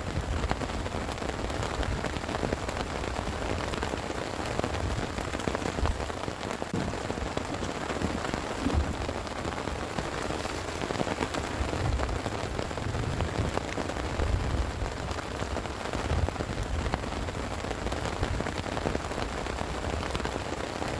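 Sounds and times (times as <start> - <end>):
heavy rain falling: 0.0 - 20.9
low thumps: 8.0 - 9.5.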